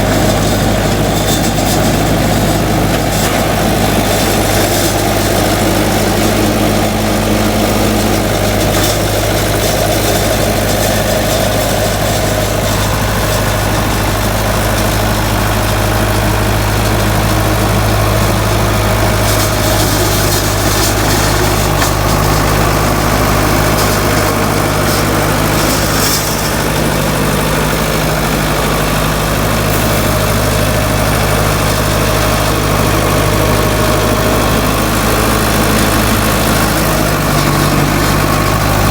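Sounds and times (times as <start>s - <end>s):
farm machine engine running: 0.0s - 38.9s.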